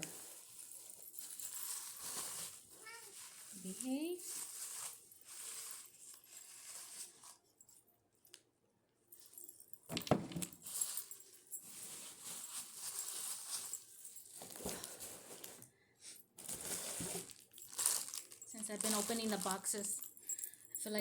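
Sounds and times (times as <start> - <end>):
wrapping paper rustling: 0.0 - 7.4, 10.6 - 15.6, 16.4 - 20.0
ornaments clinking: 17.6 - 21.0.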